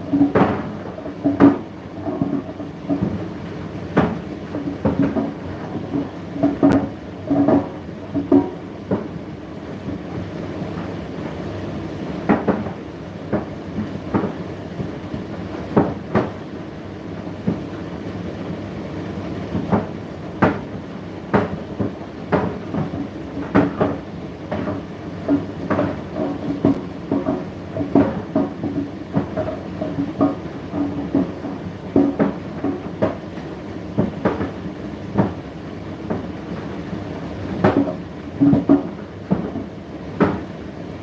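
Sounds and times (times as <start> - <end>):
knocks and clicks of turning drum: 3.9 - 9.2, 21.3 - 35.4, 37.5 - 40.5.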